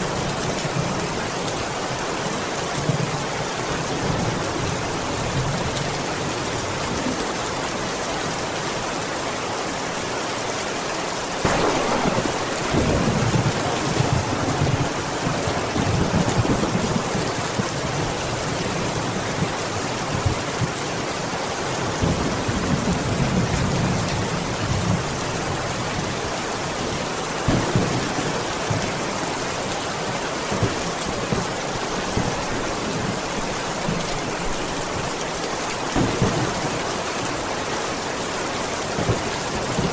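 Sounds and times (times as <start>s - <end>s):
heavy rain on a window: 0.0s - 39.9s
thunder rumbling: 11.4s - 19.5s, 27.4s - 34.6s, 36.0s - 37.5s.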